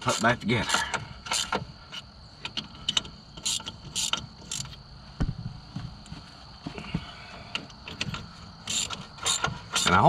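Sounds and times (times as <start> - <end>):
hand tools clicking and knocking: 6.9 - 10.0.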